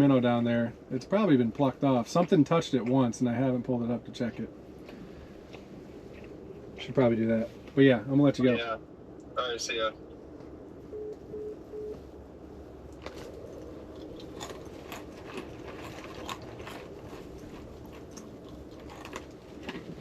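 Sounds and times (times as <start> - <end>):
dog crunching nuts: 13.0 - 20.0.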